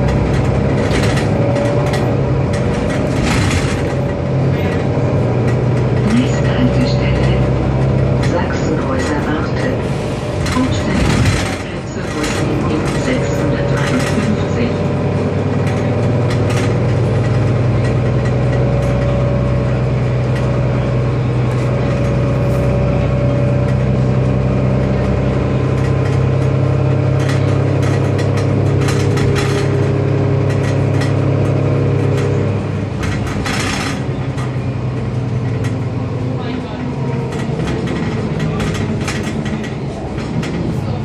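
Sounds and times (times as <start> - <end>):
loose rattling and clattering: 0.0 - 9.6, 24.7 - 36.0
bus engine drone: 0.0 - 41.0.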